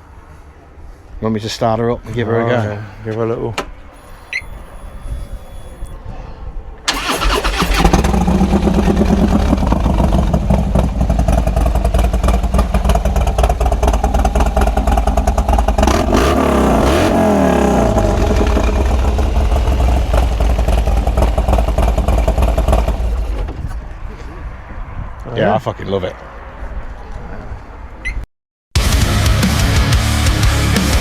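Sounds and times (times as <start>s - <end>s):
loud motorcycle engine idling: 6.9s - 23.4s
motorcycle engine revving: 6.9s - 23.6s
motorcycle engine starting: 6.9s - 23.8s.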